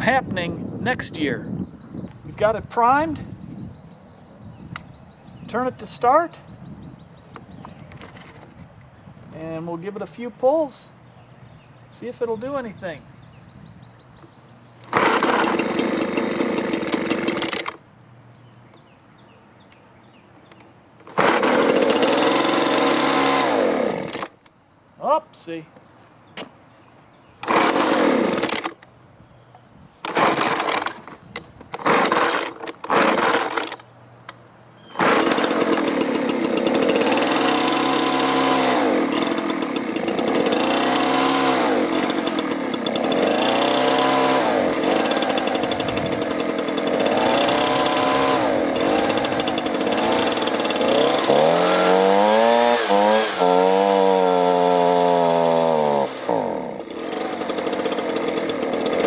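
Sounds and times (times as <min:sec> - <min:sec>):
leaf blower engine pull-starting: 0:14.8 - 0:17.8, 0:20.5 - 0:24.5, 0:27.4 - 0:28.8, 0:30.0 - 0:33.9, 0:34.9 - 0:59.0
leaf blower engine running on choke: 0:14.8 - 0:17.8, 0:21.1 - 0:24.4, 0:27.4 - 0:28.8, 0:30.0 - 0:33.8, 0:35.0 - 0:59.0.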